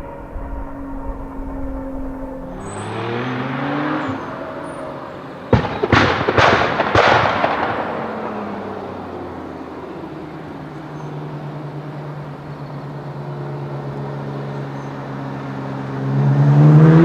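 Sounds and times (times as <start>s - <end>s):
car engine accelerating: 0.0s - 5.7s, 15.4s - 17.0s.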